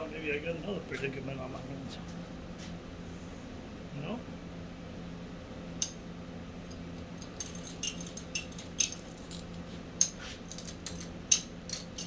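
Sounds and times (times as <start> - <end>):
steady low hum: 0.0 - 12.0
light metallic clicks and clinks: 6.7 - 12.0.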